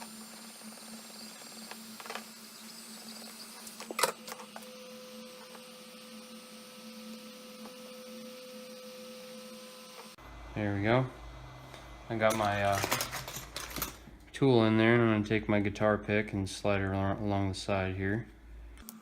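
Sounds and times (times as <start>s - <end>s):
thin high whine: 0.0s - 12.7s
heat gun running: 0.0s - 13.9s.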